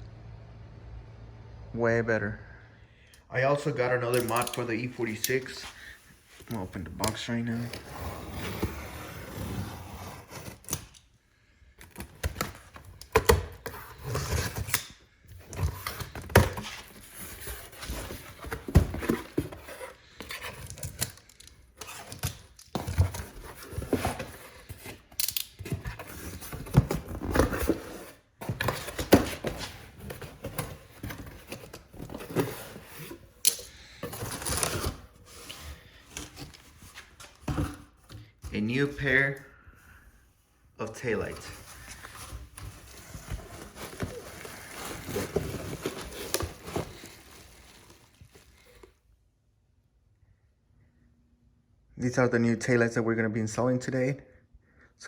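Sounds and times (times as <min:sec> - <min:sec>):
cardboard box being opened: 0:04.4 - 0:11.0, 0:11.8 - 0:38.2, 0:41.2 - 0:49.0.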